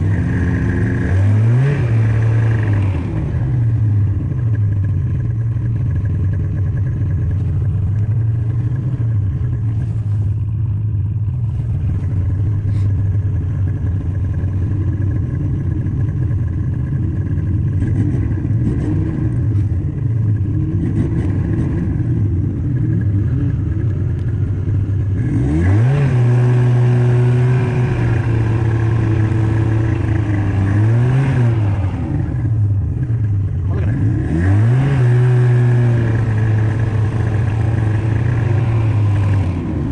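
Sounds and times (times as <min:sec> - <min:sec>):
snowmobile engine revving: 0:00.0 - 0:07.5, 0:13.7 - 0:39.9.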